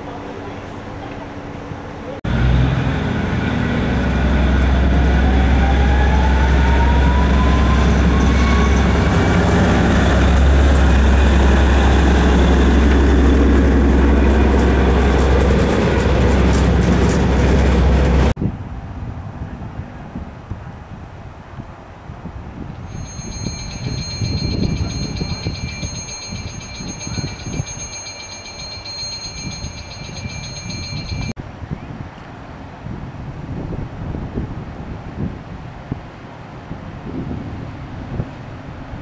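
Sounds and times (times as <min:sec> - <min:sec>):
train rumbling and whining: 0:00.0 - 0:20.0, 0:22.8 - 0:31.4.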